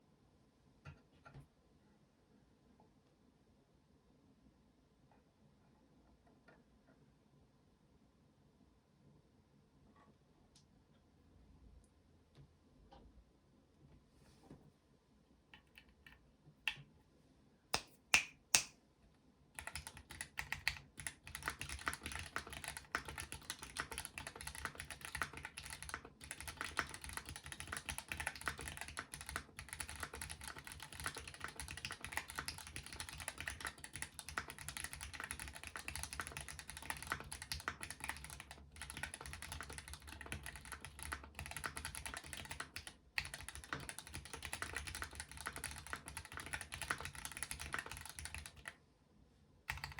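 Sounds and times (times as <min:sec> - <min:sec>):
typing on mechanical keyboard: 0:19.6 - 0:48.8, 0:49.7 - 0:49.9.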